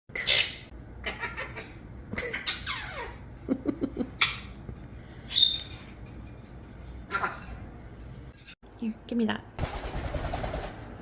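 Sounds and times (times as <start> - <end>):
parrot squawk: 0.2 - 3.2.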